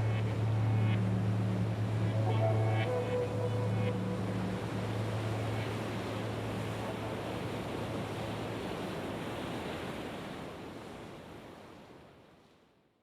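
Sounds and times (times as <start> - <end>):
low hum: 0.0 - 6.8.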